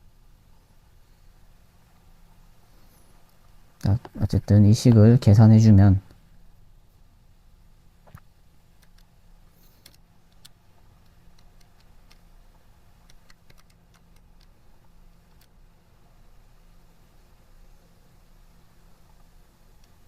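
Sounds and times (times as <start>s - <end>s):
low steady hum: 0.0s - 20.0s
calculator keys clicking: 11.3s - 12.2s, 13.0s - 14.6s.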